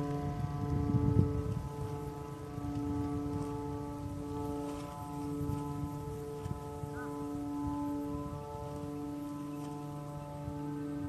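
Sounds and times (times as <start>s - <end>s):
kite flutes droning chord: 0.0s - 11.0s
low wind rumble: 0.0s - 11.0s.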